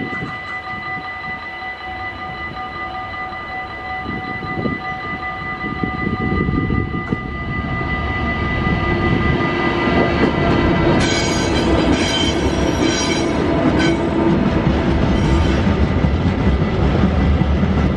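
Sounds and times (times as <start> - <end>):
freight train rumbling over rails: 0.0 - 17.9
high wheel squeal: 2.6 - 14.1, 15.1 - 15.6.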